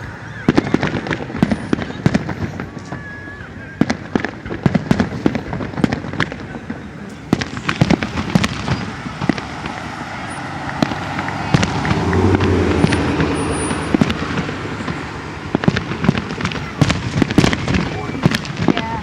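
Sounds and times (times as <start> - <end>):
fireworks bangs and crackles: 0.0 - 19.0
car driving past: 7.2 - 18.4.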